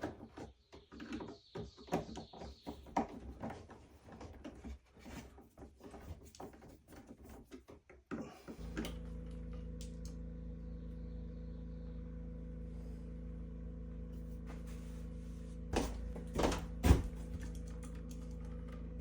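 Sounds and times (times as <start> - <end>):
mechanical hum: 8.3 - 19.0
handling clicks and knocks: 15.8 - 19.0.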